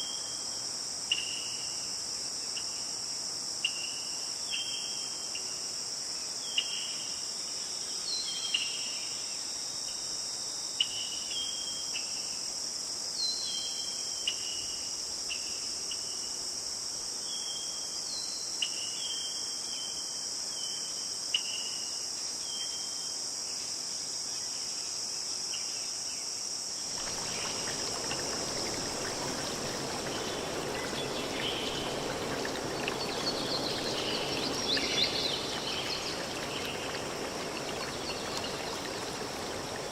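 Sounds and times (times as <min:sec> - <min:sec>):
crickets and insects chirring: 0:00.0 - 0:39.9
stream rushing: 0:26.9 - 0:39.9.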